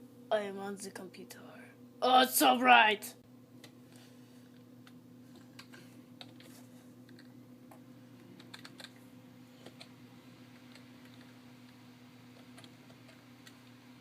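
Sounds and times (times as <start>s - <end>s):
steady low hum: 0.0s - 14.0s
computer keyboard typing: 5.5s - 6.5s, 8.4s - 9.0s, 9.6s - 9.9s, 12.3s - 13.6s.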